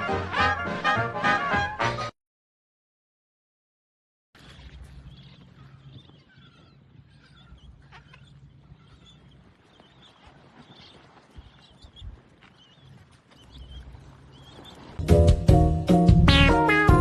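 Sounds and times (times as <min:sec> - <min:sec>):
bird chirps: 0:04.4 - 0:15.0.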